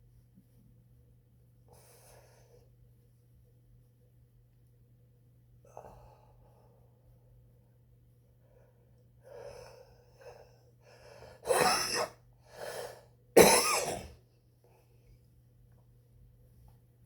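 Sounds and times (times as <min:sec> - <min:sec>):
quiet breathy sounds: 0:01.6 - 0:03.4, 0:05.6 - 0:11.4
person coughing: 0:11.5 - 0:12.2, 0:13.4 - 0:14.2.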